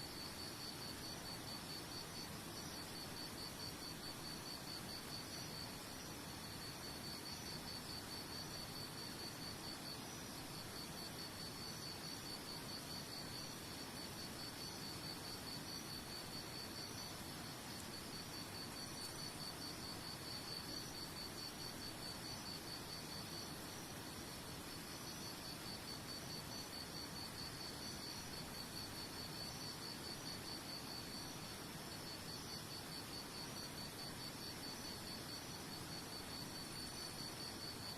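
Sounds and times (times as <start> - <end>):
cricket chirping: 0.0 - 37.9.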